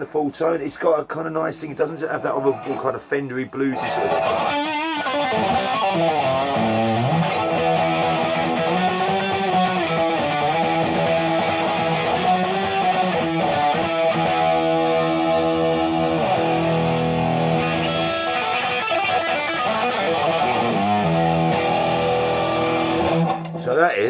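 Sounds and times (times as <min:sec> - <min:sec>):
distorted electric guitar: 0:03.7 - 0:24.0.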